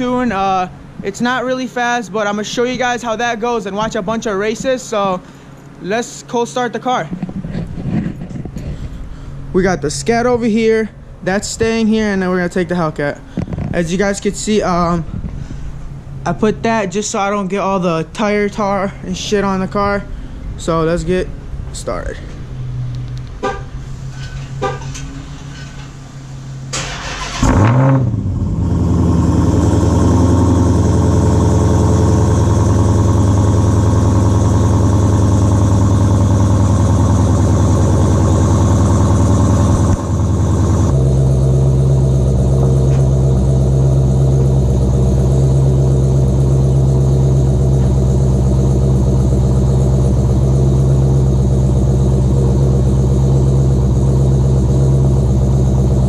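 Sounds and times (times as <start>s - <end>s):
car engine starting and idling: 0.0s - 56.0s
engine cranking: 22.9s - 28.1s.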